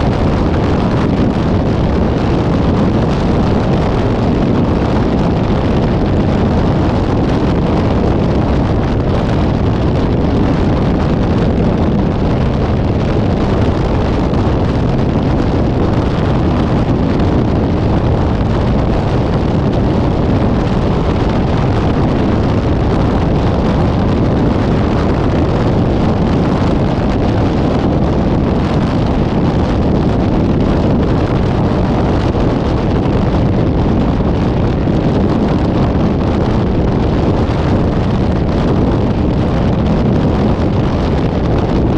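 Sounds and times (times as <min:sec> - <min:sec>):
moving vehicle rumble: 0:00.0 - 0:41.9
wind rushing on microphone: 0:00.0 - 0:41.9.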